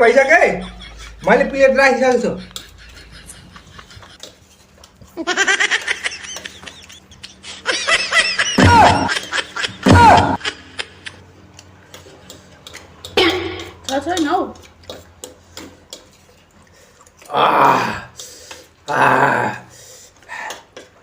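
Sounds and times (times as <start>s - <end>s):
person laughing: 0.3s - 4.3s, 5.1s - 11.2s.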